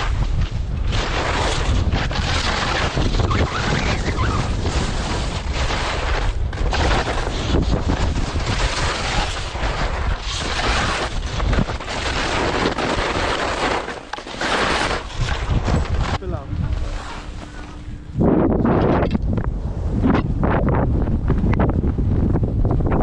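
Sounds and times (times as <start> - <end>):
wind buffeting microphone: 0.0 - 13.6, 14.4 - 23.0
skis scraping on snow: 0.0 - 17.9.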